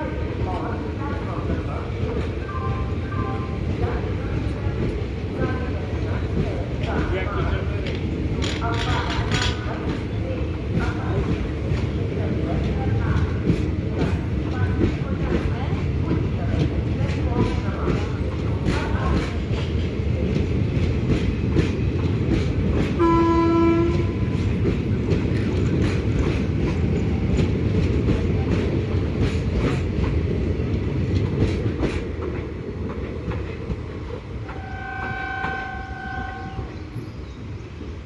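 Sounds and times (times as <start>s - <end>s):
train rolling over rail joints: 0.0s - 38.0s
higher train horn: 22.8s - 24.7s, 34.4s - 37.1s
low train horn: 23.0s - 24.5s, 34.4s - 36.8s.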